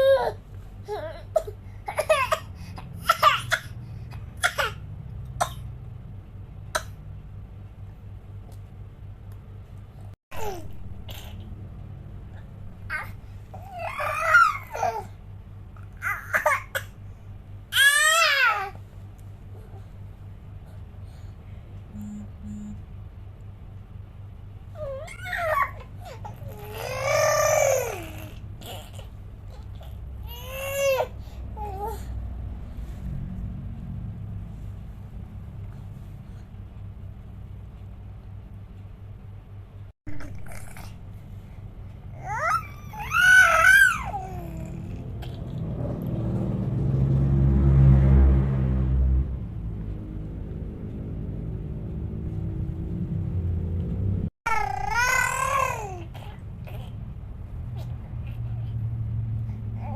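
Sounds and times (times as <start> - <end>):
infant crying: 0.0 - 3.6, 12.9 - 15.1, 24.8 - 32.1, 42.2 - 45.0, 54.5 - 57.0
steady low hum: 0.0 - 59.9.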